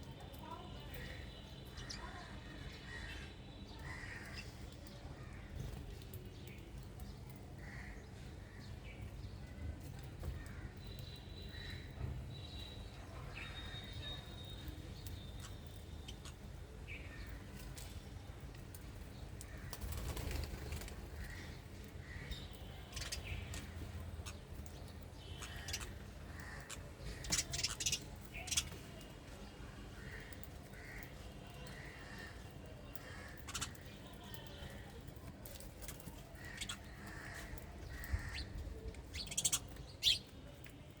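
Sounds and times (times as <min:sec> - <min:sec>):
birds calling: 0:07.3 - 0:18.0, 0:19.1 - 0:34.9, 0:35.5 - 0:40.4.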